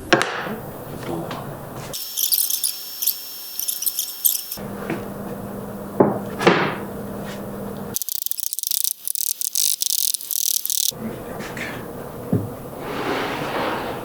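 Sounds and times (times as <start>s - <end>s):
high-pitched chirring: 2.0s - 4.6s, 8.0s - 10.9s.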